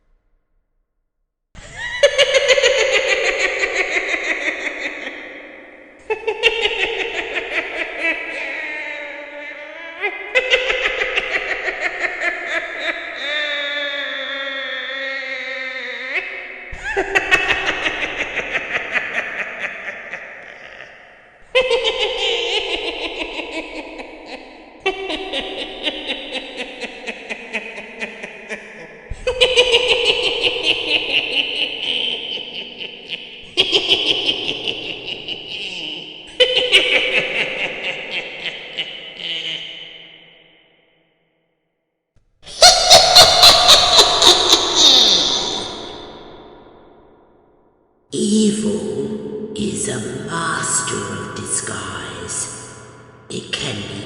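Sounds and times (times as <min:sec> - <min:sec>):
high-pitched cackling laugh: 0:01.6 - 0:40.2, 0:42.5 - 0:46.3.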